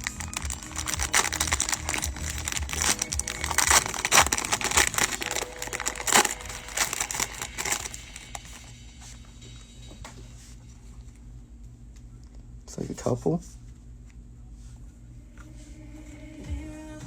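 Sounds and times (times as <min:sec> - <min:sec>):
wrappers crinkling and tearing: 0:00.0 - 0:08.7
background music: 0:00.0 - 0:09.9.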